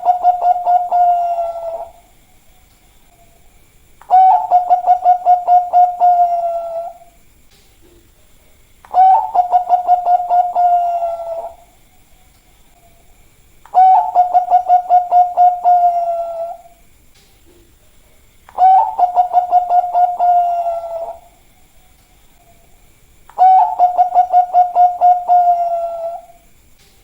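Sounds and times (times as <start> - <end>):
dove cooing: 0.0 - 2.1, 4.0 - 7.2, 8.9 - 11.8, 13.7 - 16.8, 18.5 - 21.4, 23.3 - 26.4.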